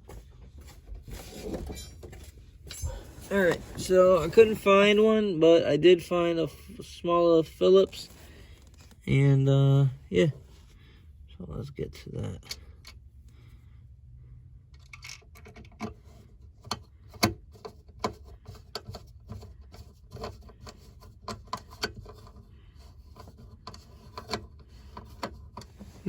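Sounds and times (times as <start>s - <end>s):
light scraping and rubbing: 0.1s - 5.2s, 15.9s - 26.0s.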